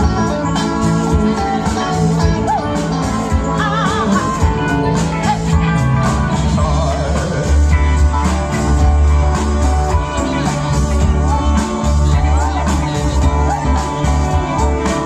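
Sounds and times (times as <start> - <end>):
live blues band playing: 0.0 - 15.0
person singing: 0.0 - 15.0.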